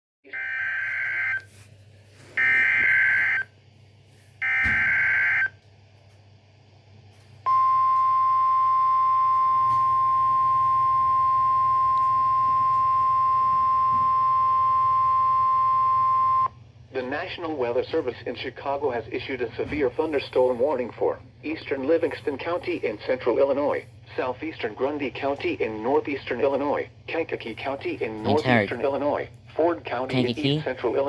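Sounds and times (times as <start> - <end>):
steady attention tone: 7.5 - 16.5.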